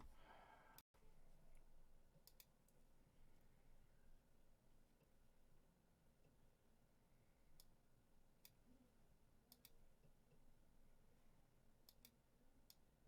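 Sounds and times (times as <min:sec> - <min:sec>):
computer mouse clicks: 0:02.2 - 0:02.6, 0:09.5 - 0:09.8, 0:11.8 - 0:12.9.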